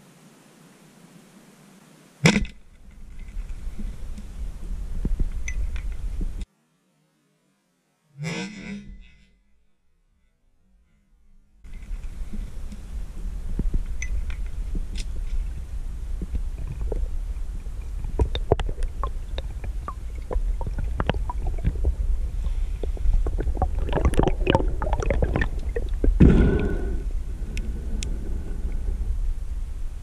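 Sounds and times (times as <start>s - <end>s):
underwater clicks and crackles: 2.3s - 6.4s, 11.7s - 26.9s
low underwater rumble: 2.7s - 6.4s, 11.7s - 30.0s
gurgling burst: 18.1s - 28.3s.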